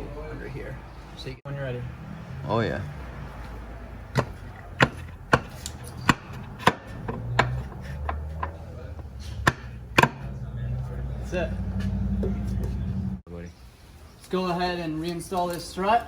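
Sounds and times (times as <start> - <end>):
hammer striking metal axle: 3.4 - 13.2.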